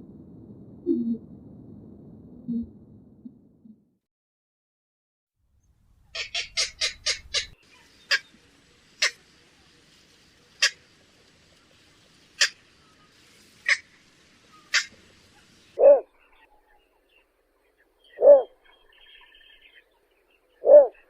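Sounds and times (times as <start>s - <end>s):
heron sharp calls: 6.1s - 8.3s, 20.6s - 21.0s.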